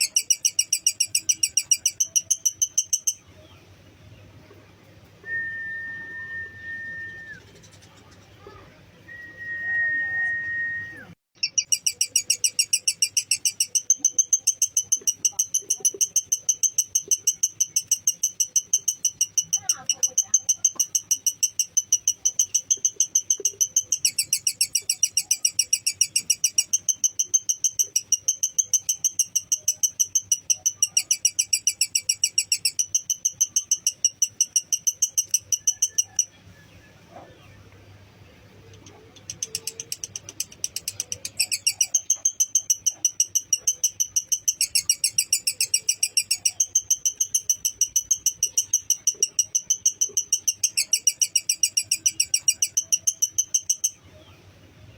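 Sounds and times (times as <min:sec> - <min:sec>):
lovebird chattering trill: 0:00.0 - 0:03.5, 0:11.4 - 0:36.5, 0:38.6 - 0:54.3.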